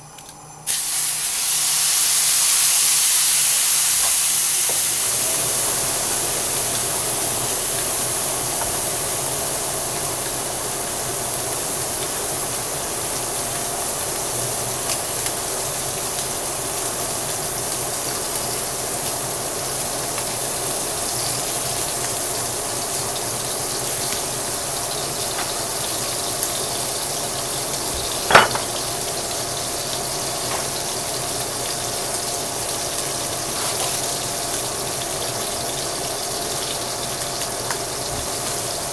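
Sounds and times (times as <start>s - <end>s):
meat sizzling in a hot pan: 0.7s - 38.9s
sharp metallic clank: 28.3s - 28.8s.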